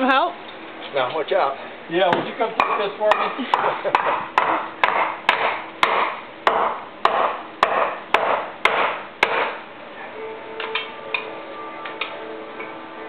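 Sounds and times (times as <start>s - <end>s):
hammer striking wooden beam: 2.1s - 9.6s.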